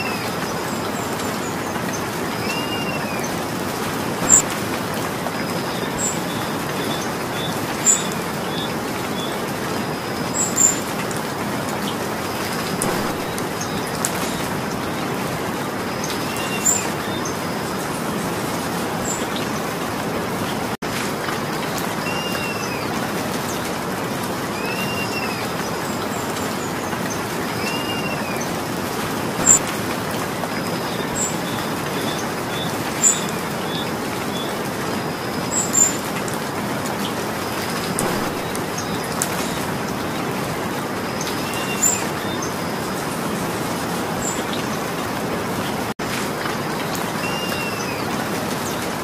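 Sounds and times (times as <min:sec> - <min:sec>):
steady rain: 0:00.0 - 0:49.0
bird chirping: 0:04.2 - 0:04.4, 0:12.8 - 0:15.0, 0:29.4 - 0:29.6, 0:38.0 - 0:39.6.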